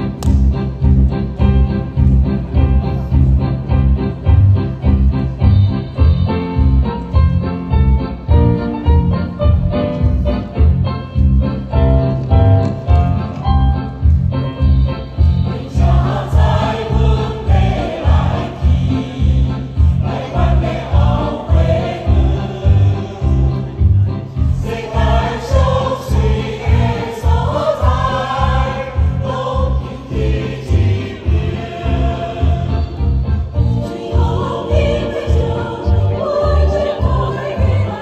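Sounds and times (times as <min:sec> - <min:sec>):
choir singing upbeat song: 0:15.3 - 0:38.0.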